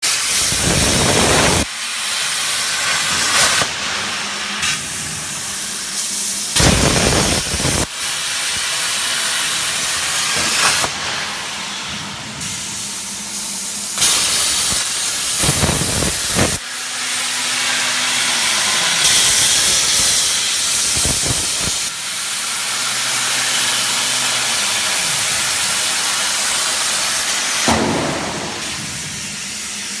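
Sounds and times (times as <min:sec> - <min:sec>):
plasma torch hissing: 0:00.0 - 0:30.0.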